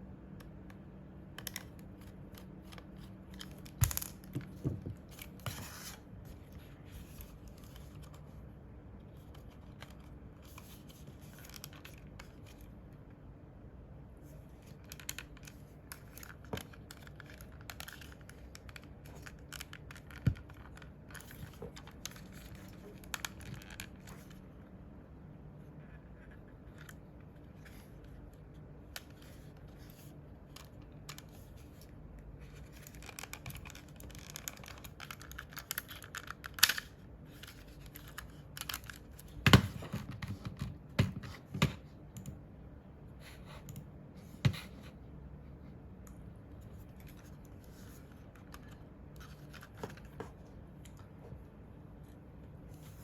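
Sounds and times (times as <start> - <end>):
plastic parts clicking and scratching: 25.8 - 41.8.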